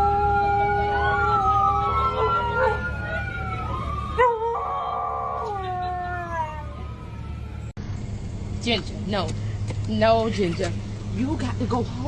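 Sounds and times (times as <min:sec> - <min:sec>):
dogs howling: 0:00.0 - 0:07.0.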